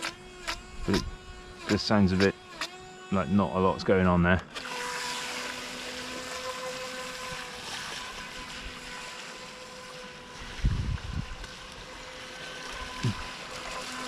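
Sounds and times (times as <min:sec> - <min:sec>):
model boat motor whine: 0:00.0 - 0:14.0
wind on microphone: 0:00.6 - 0:01.5, 0:10.4 - 0:11.5.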